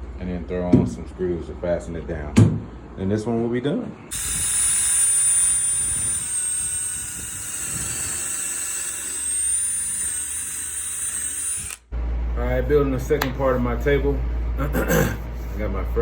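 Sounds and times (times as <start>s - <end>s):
cordless drill motor whine: 4.1s - 11.9s.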